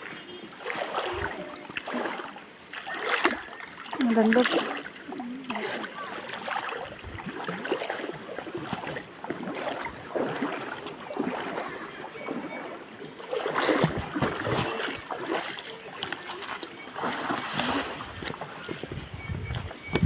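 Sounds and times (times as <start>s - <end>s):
people wading through water: 0.0s - 20.0s.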